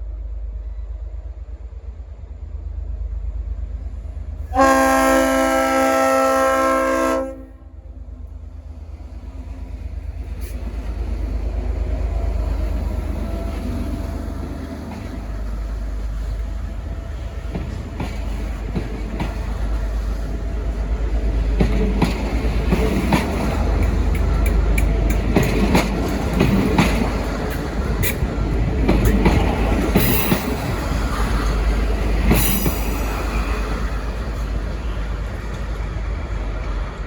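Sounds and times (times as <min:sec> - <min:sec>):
train rumbling past: 0:00.0 - 0:37.0
locomotive air horn chord: 0:04.5 - 0:07.9
wheels clicking over rail joints: 0:09.6 - 0:37.0.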